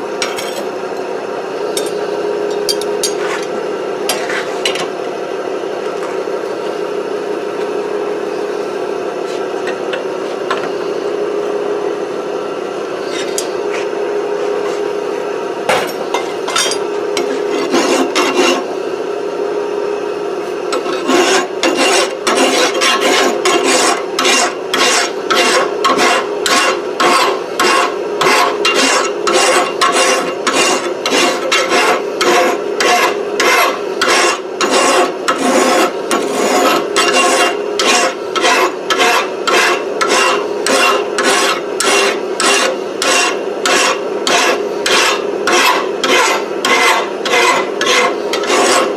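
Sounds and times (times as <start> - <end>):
file rasping on steel: 17.2 - 18.7, 20.7 - 48.9.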